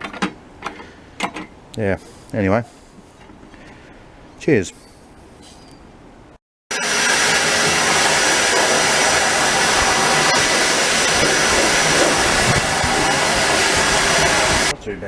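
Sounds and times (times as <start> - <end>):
table saw running: 6.7 - 14.7.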